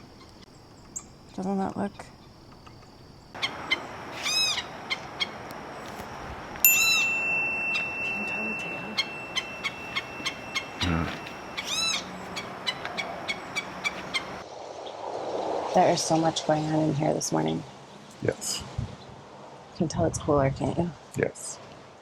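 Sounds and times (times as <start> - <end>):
bird slurred arched calls: 3.4 - 5.4, 7.7 - 14.4.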